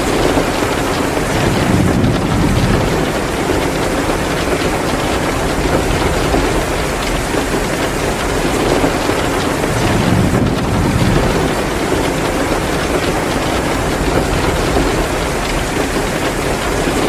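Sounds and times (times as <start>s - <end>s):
heavy rain hissing: 0.0s - 17.0s
low rumble: 9.6s - 12.2s.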